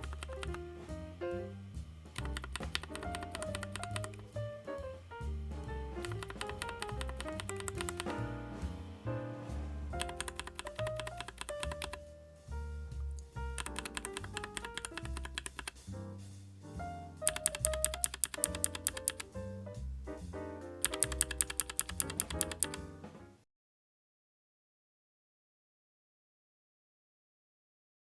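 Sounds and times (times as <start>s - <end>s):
keyboard key clicks: 0.0s - 0.6s, 2.2s - 4.4s, 6.0s - 8.2s, 10.0s - 12.0s, 13.2s - 15.8s, 17.2s - 19.3s, 20.8s - 22.9s
background music: 0.0s - 23.4s.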